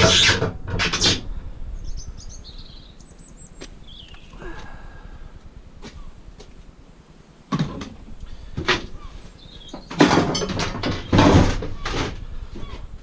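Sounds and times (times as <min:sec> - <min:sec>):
scrap metal clanking: 0:09.8 - 0:12.8.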